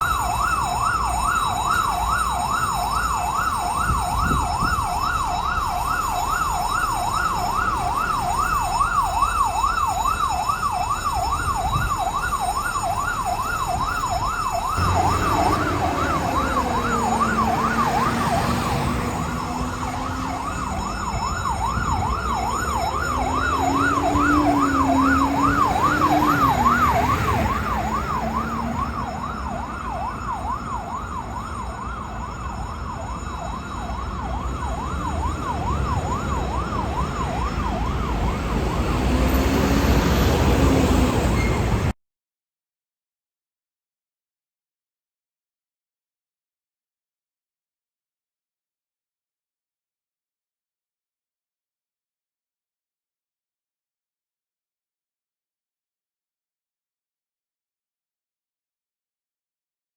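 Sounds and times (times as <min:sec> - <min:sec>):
lower wavering siren tone: 0:00.0 - 0:39.6
fire engine siren sweeping: 0:00.0 - 0:42.0.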